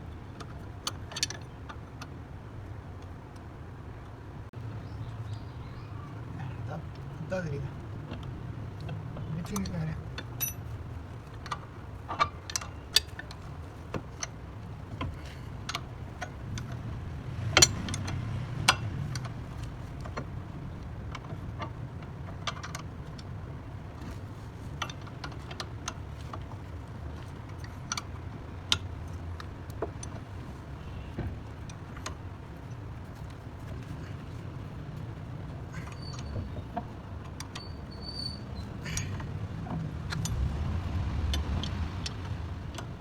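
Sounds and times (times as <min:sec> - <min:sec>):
metallic clicks of hand tools: 0:08.1 - 0:10.7, 0:15.0 - 0:23.3, 0:35.7 - 0:43.0.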